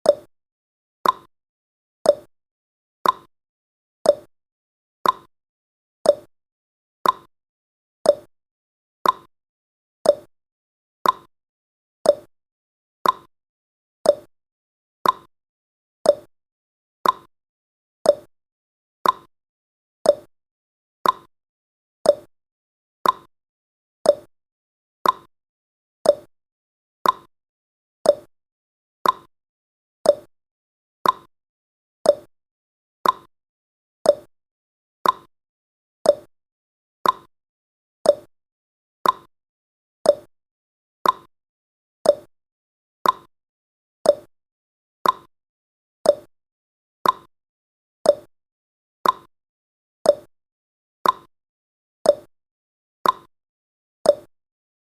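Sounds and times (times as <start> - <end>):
clock ticking: 13.0 - 13.3, 29.0 - 29.3, 33.0 - 33.3, 37.0 - 37.3, 39.0 - 39.3, 43.0 - 43.3, 45.0 - 45.3, 47.0 - 47.3.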